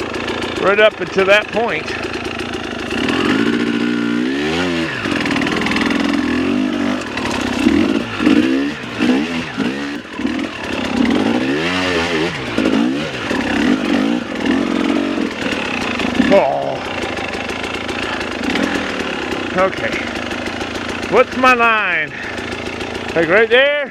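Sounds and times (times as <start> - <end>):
dirt bike engine revving: 0.0 - 23.9.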